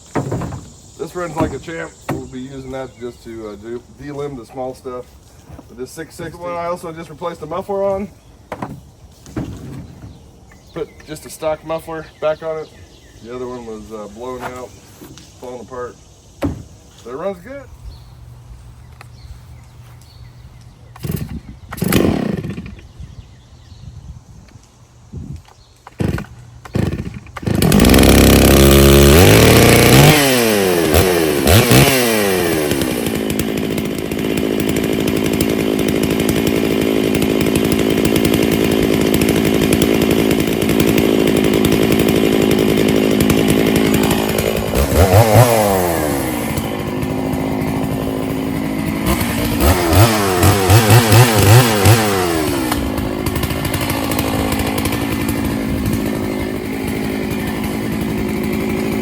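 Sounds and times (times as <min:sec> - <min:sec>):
chainsaw revving: 0:00.0 - 0:04.7, 0:20.9 - 0:22.9, 0:25.9 - 0:59.0
chainsaw pull-starting: 0:00.0 - 0:10.2, 0:20.9 - 0:22.9, 0:25.5 - 0:59.0.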